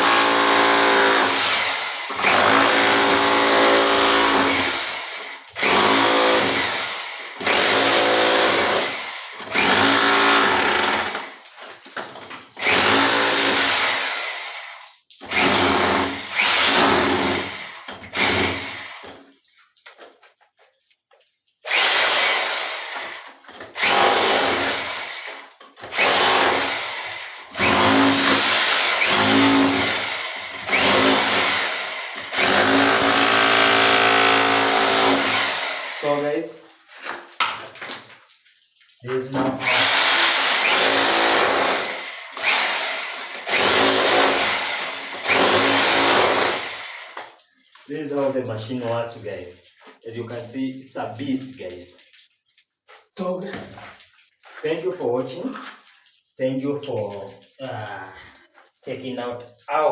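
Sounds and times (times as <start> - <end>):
rotary hammer chiselling: 23.8 - 36.1, 39.6 - 47.2.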